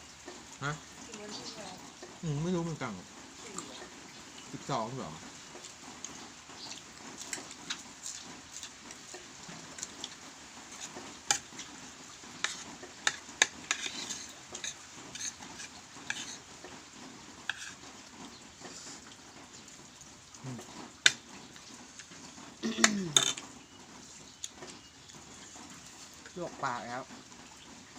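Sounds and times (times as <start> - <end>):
utensils clinking against bowl: 12.5 - 16.4, 22.6 - 23.5.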